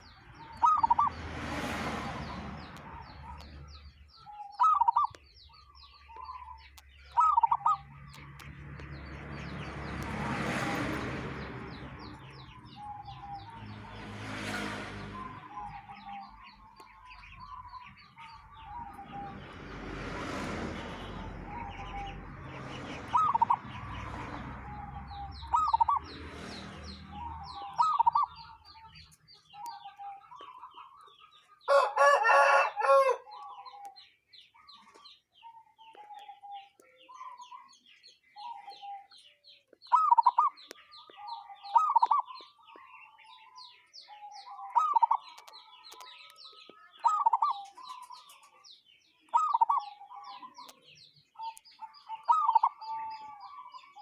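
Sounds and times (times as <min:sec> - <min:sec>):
dove cooing: 0:00.0 - 0:01.2, 0:02.0 - 0:08.0, 0:17.4 - 0:19.6, 0:21.0 - 0:22.1, 0:24.6 - 0:26.2, 0:27.1 - 0:31.0, 0:39.9 - 0:42.4, 0:43.6 - 0:45.9, 0:49.3 - 0:50.7, 0:51.4 - 0:54.0
small birds chirping faintly: 0:00.0 - 0:54.0
rooster crowing: 0:31.7 - 0:33.4.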